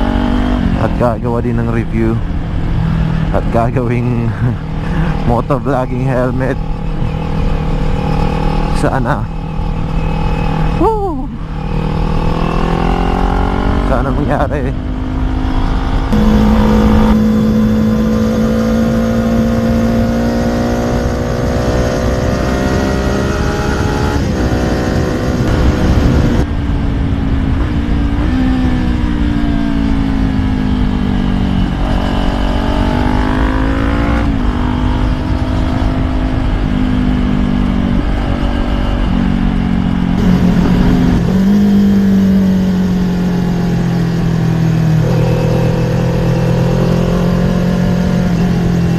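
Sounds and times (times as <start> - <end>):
motorcycle engine on the move: 0.0 - 48.9
rush of wind noise: 6.3 - 48.9.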